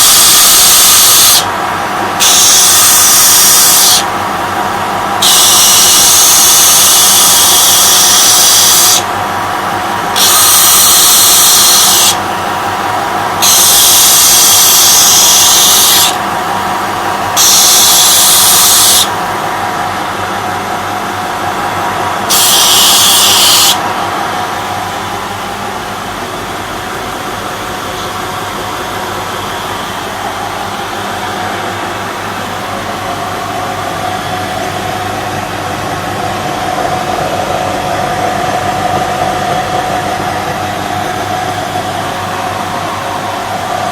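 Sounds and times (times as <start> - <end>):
belt grinder motor running: 2.2 - 4.2, 5.1 - 9.1, 9.7 - 19.2, 22.3 - 23.8
hissing grinding on sanding belt: 10.2 - 12.2, 22.3 - 23.8.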